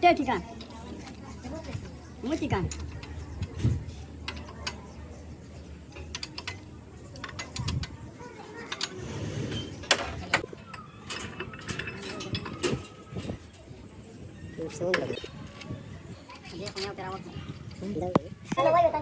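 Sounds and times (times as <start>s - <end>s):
metallic clicks and knocks: 0.6s - 3.6s, 5.9s - 8.0s, 9.8s - 13.7s.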